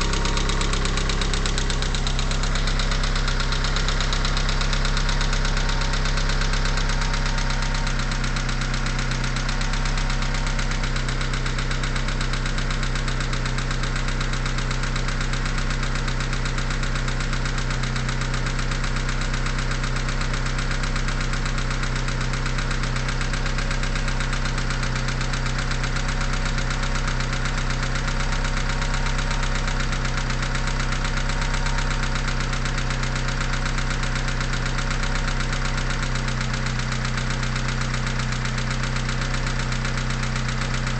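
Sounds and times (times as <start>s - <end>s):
car engine idling with knock: 0.0s - 40.9s.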